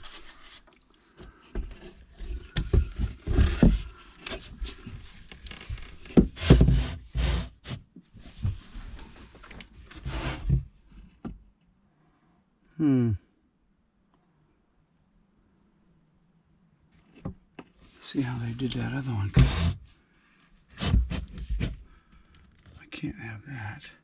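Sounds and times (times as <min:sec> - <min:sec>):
wooden parts knocking and scraping: 0:01.5 - 0:07.3, 0:19.4 - 0:19.8.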